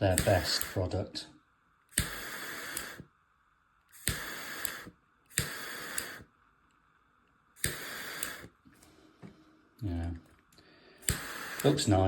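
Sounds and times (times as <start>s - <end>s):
torch flame hissing: 0.0s - 3.2s, 3.9s - 6.4s, 7.5s - 8.8s, 9.8s - 12.0s
lighter ignition click: 0.1s - 0.8s, 1.9s - 3.1s, 3.9s - 6.3s, 7.6s - 8.6s, 11.0s - 11.9s.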